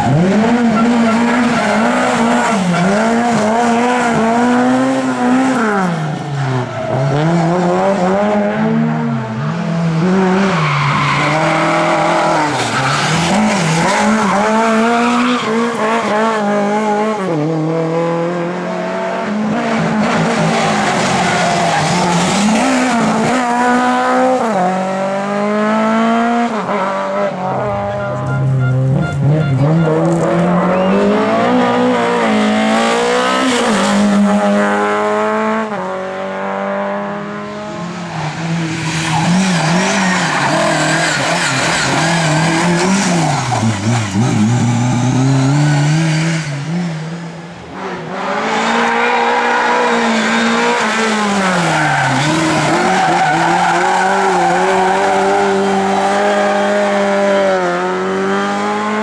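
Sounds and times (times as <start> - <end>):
tyres squealing and skidding: 0.0 - 4.2, 9.4 - 16.5, 20.2 - 24.3, 27.5 - 32.3, 38.1 - 46.6, 48.7 - 56.7
race car engines revving: 0.0 - 59.0.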